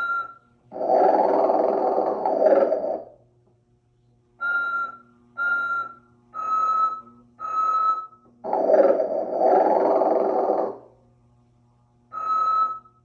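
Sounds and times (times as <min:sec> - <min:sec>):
faint low hum: 0:00.0 - 0:13.0
loud snore: 0:00.7 - 0:03.1, 0:08.5 - 0:10.8.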